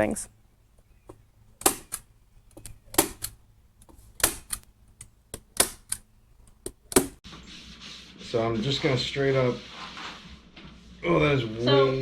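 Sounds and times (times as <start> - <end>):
sharp hard clicks: 1.1 - 7.2.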